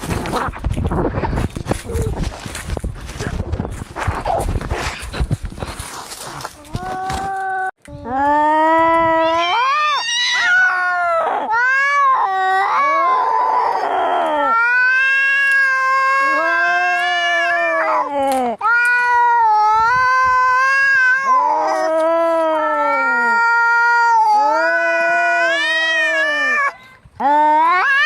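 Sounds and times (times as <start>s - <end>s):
cats yowling: 9.2s - 18.1s, 18.7s - 26.8s, 27.5s - 28.0s.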